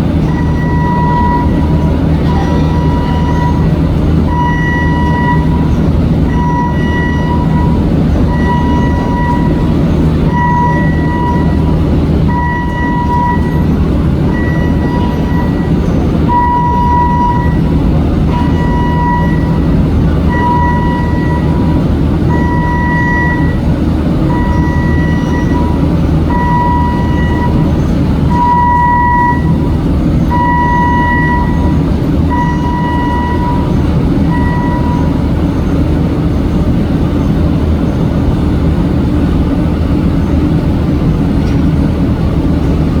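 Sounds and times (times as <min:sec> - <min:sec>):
electronic warning beeper: 0:00.2 - 0:23.6, 0:24.3 - 0:35.2.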